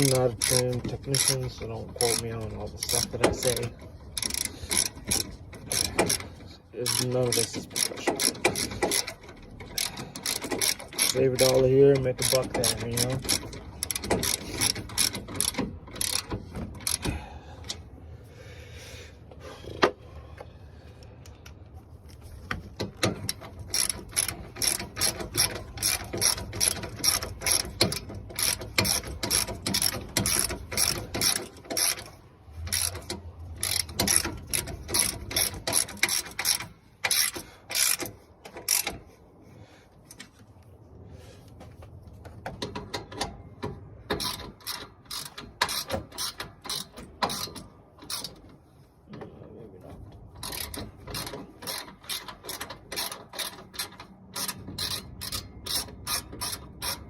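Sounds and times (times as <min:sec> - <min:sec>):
ratchet wrench clicking: 0:00.0 - 0:17.8, 0:22.9 - 0:39.0, 0:44.1 - 0:48.4, 0:50.4 - 0:57.0.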